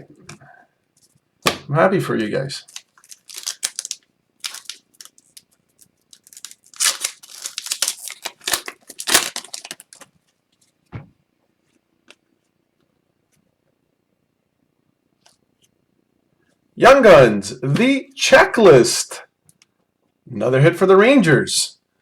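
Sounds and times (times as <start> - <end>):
wrapper tearing and crinkling: 2.6 - 10.2.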